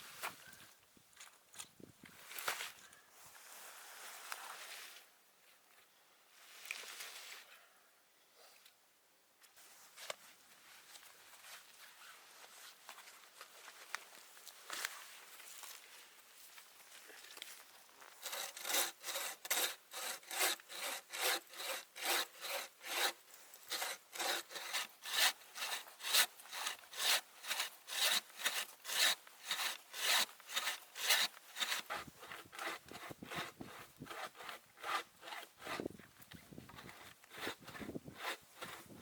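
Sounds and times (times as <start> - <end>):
hand saw cutting wood: 18.2 - 36.0, 36.7 - 39.0.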